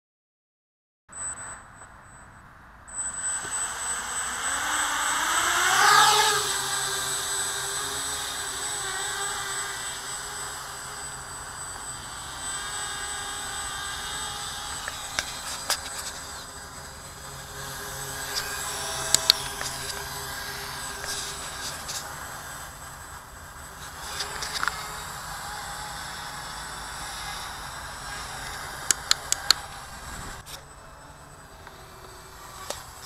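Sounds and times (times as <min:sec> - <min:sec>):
quadcopter motors whining: 0:01.2 - 0:33.0
sharp clicks: 0:14.7 - 0:16.4, 0:18.2 - 0:20.1, 0:24.0 - 0:24.9, 0:28.4 - 0:30.5.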